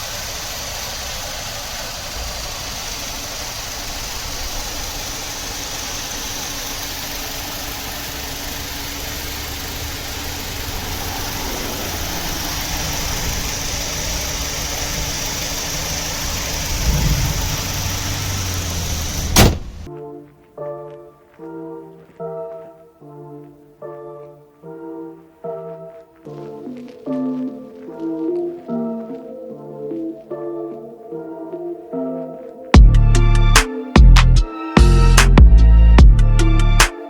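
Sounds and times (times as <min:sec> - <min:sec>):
car engine running with misfire: 0:00.0 - 0:19.9, 0:32.8 - 0:37.0.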